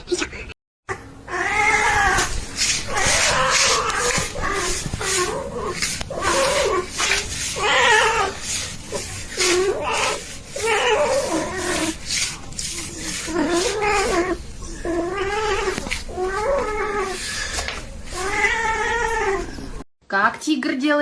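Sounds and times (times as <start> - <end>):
cat meowing: 0.9 - 12.0, 18.1 - 19.7.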